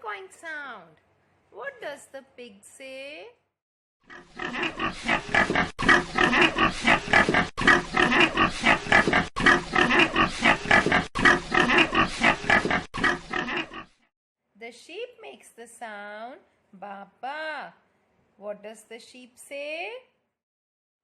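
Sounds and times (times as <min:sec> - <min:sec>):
pig grunting and oinking: 0:04.0 - 0:14.0.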